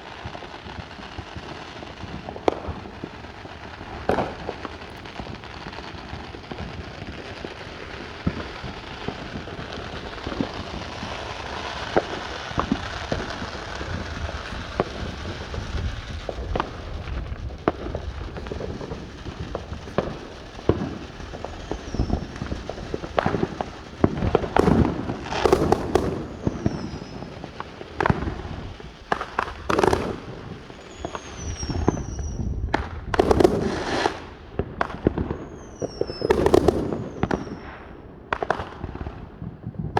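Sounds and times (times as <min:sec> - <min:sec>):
fireworks hissing: 0:00.0 - 0:37.9
firework pops: 0:00.0 - 0:39.9
loud firework bangs: 0:00.0 - 0:39.9
faint falling whistles: 0:21.0 - 0:23.1, 0:26.2 - 0:27.4, 0:30.7 - 0:32.6, 0:35.4 - 0:37.6.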